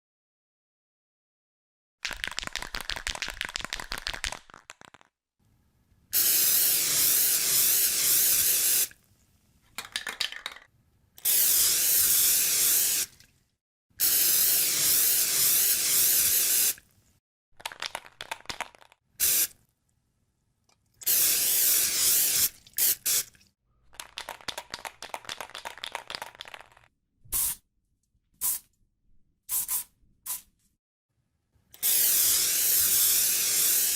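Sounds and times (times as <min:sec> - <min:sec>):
spray can rattling when shaken: 0:02.0 - 0:05.1, 0:06.2 - 0:08.9, 0:09.8 - 0:13.1, 0:14.0 - 0:16.8, 0:17.6 - 0:19.5, 0:21.0 - 0:23.3, 0:23.9 - 0:27.6, 0:29.5 - 0:30.5, 0:31.8 - 0:33.9
spray paint hissing: 0:06.2 - 0:08.9, 0:11.2 - 0:13.1, 0:14.0 - 0:16.8, 0:19.2 - 0:19.5, 0:21.1 - 0:23.2, 0:27.3 - 0:27.6, 0:28.4 - 0:28.6, 0:29.5 - 0:30.5, 0:31.8 - 0:33.9.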